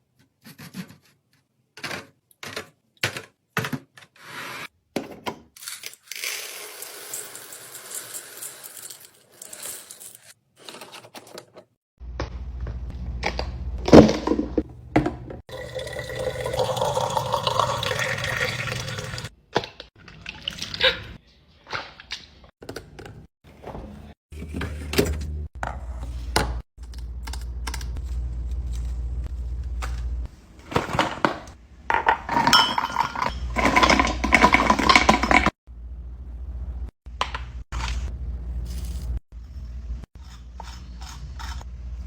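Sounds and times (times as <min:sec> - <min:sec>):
dishes clinking and thunking: 0:30.7 - 0:35.5.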